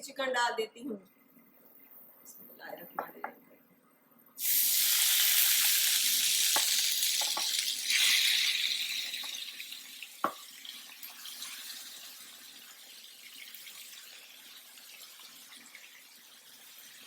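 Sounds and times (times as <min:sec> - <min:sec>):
chicken sizzling in a pan: 0:04.4 - 0:17.0
utensil knocking on pan: 0:06.6 - 0:07.6.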